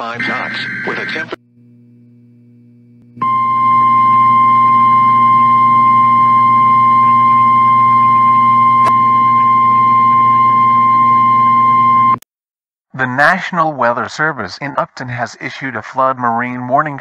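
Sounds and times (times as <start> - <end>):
low hum: 0.0 - 12.2
steady warning tone: 0.0 - 12.2.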